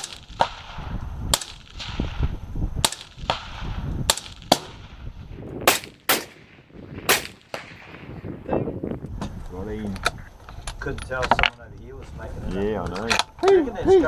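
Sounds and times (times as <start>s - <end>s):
rifle shots: 0.0s - 8.2s.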